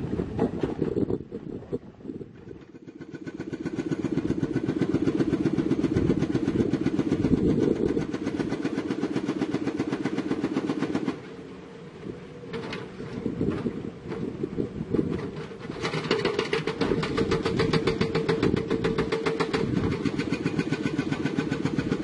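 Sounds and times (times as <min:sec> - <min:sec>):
diesel engine running: 0:00.0 - 0:22.0
hydraulic breaker hammering rock: 0:02.6 - 0:11.2, 0:15.1 - 0:22.0.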